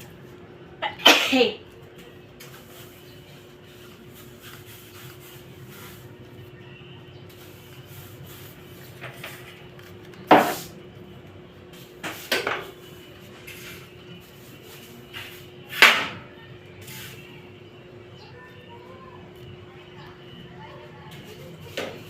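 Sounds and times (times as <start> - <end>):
person sneezing: 0.8 - 1.6.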